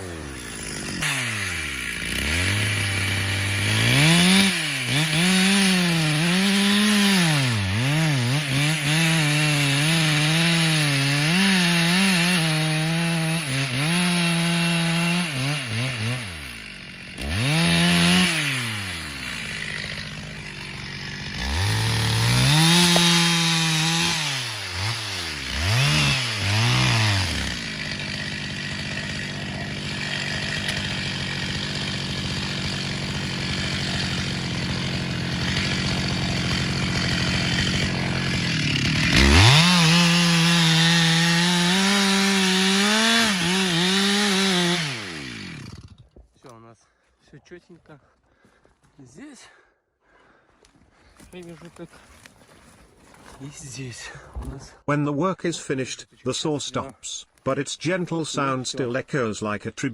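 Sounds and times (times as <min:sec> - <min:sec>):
chainsaw cutting wood: 0:00.0 - 0:46.3.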